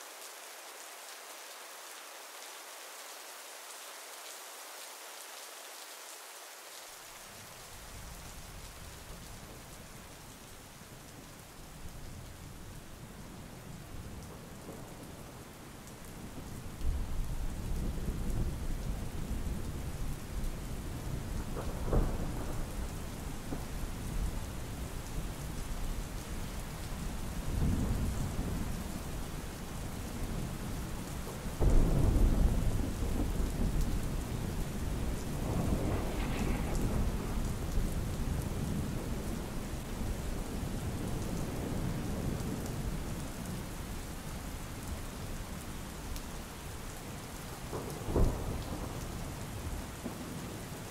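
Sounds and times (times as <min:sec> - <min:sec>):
steady rain: 0:00.0 - 0:50.9
rolling thunder: 0:31.6 - 0:40.2.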